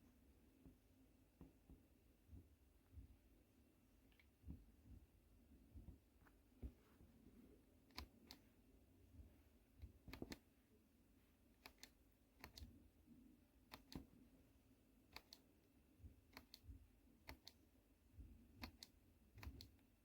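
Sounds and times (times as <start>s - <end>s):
low steady hum: 0.0s - 20.0s
faint sharp clicks: 15.1s - 15.5s.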